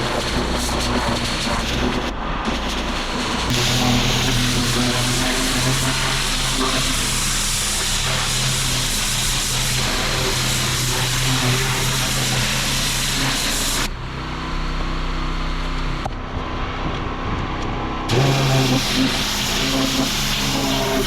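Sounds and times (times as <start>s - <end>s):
water jet hissing on hard surface: 0.0s - 13.9s, 18.1s - 21.0s
pressure washer engine running: 0.0s - 14.2s, 18.1s - 21.0s.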